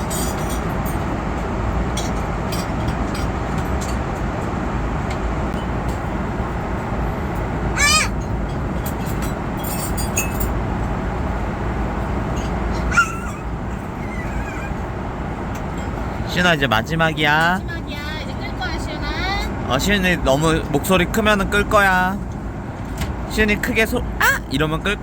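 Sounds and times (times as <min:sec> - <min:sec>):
vehicle road and engine rumble: 0:00.0 - 0:25.0
high-pitched vocal squeal: 0:07.8 - 0:08.2, 0:12.7 - 0:14.9, 0:24.2 - 0:24.5.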